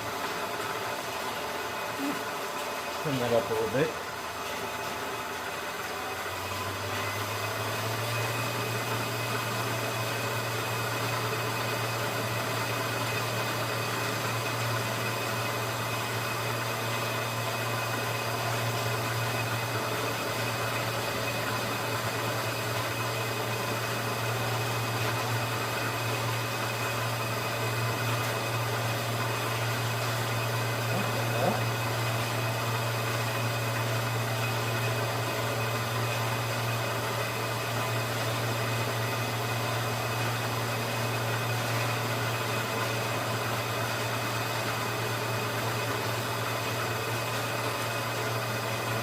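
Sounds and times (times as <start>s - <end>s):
milling machine running: 0.0s - 49.0s.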